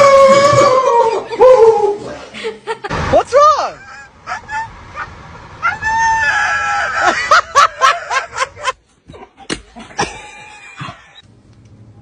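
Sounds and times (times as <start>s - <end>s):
rooster crowing: 4.3s - 8.2s.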